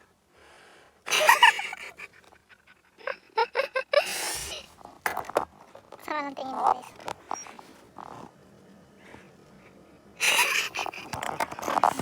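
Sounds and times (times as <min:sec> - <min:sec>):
person laughing: 0:01.1 - 0:04.7, 0:10.2 - 0:11.2.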